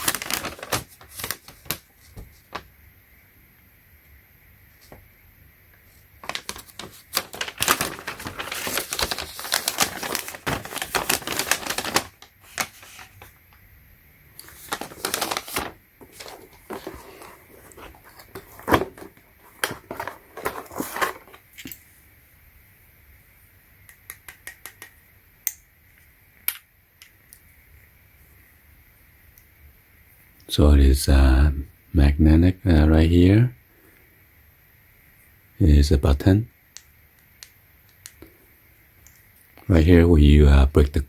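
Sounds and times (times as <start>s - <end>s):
packaging crackling and clicking: 0.0s - 1.9s, 6.2s - 13.3s, 14.4s - 21.8s.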